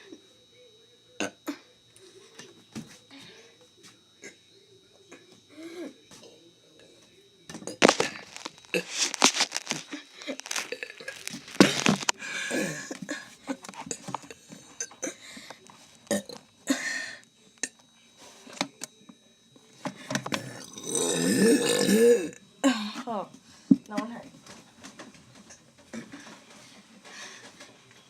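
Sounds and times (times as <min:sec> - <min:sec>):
person burping: 0:01.2 - 0:01.6, 0:07.7 - 0:15.2, 0:16.1 - 0:17.8, 0:20.4 - 0:23.1.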